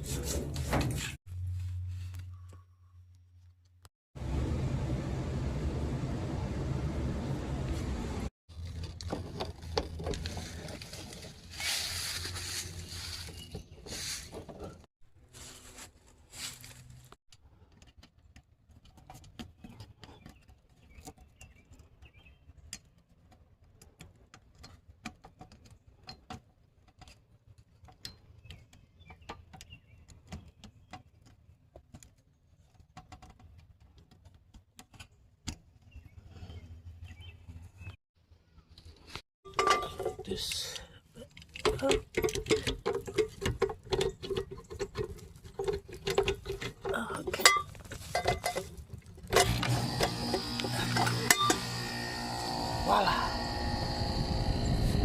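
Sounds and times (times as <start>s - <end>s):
low hum: 4.2s - 8.3s, 49.3s - 55.0s.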